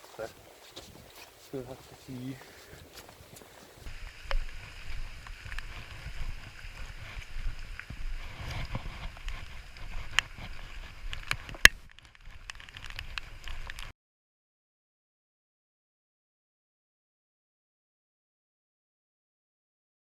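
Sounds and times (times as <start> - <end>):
wind buffeting microphone: 0.0 - 13.9.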